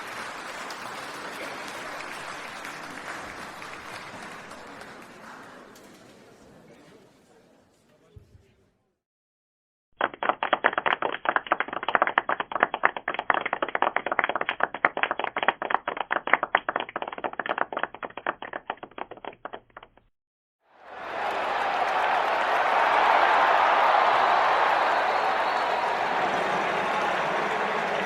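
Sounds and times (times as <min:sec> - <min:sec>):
hand clapping: 0:00.0 - 0:05.4, 0:10.0 - 0:20.1
crowd applause: 0:00.0 - 0:06.4, 0:20.7 - 0:28.0.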